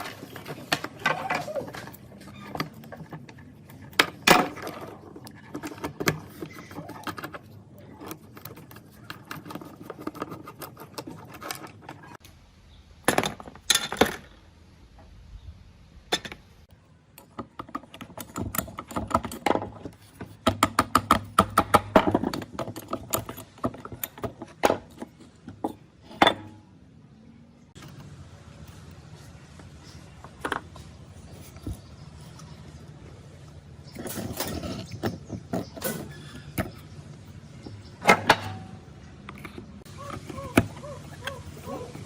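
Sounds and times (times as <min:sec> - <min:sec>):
metal tools clinking and tapping: 0:33.9 - 0:36.8.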